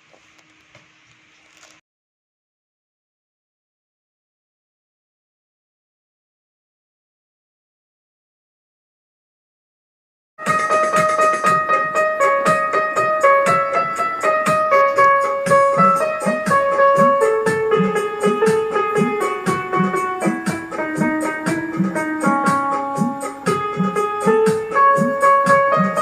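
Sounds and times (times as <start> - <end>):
piano-like keyboard melody: 10.4 - 26.0
steady low beat: 10.4 - 26.0.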